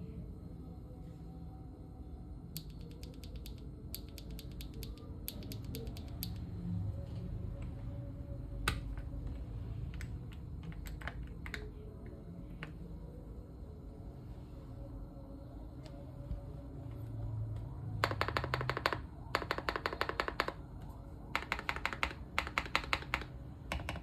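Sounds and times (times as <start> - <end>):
mechanical keyboard typing: 2.6 - 6.5, 18.0 - 20.6, 21.3 - 24.0.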